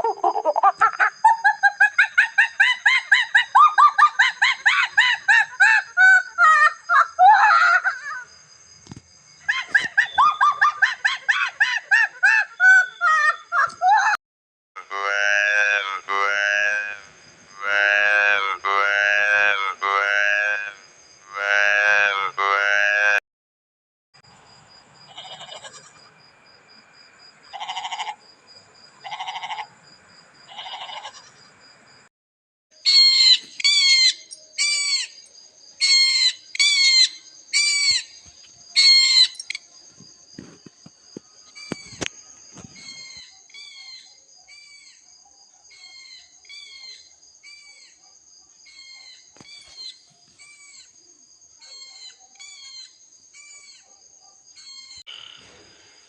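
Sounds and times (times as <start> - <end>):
goat bleating: 25.1 - 26.0, 30.5 - 31.3
animal high chirping calls: 32.8 - 35.2, 35.8 - 38.2, 38.8 - 39.6, 42.8 - 45.0, 51.6 - 53.9, 54.6 - 55.3.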